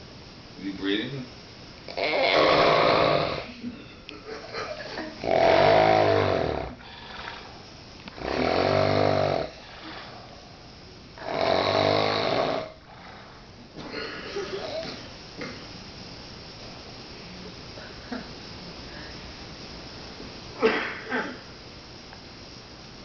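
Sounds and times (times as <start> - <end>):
man snoring: 1.9 - 3.6, 5.2 - 7.5, 8.1 - 10.3, 11.2 - 13.4
quiet breathing: 6.6 - 8.2, 8.9 - 10.7, 12.6 - 15.2, 17.2 - 19.6.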